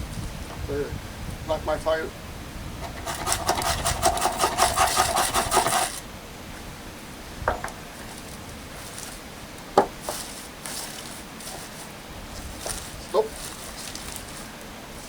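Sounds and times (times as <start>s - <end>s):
striker rasping on firesteel: 2.8s - 6.0s, 10.0s - 14.5s.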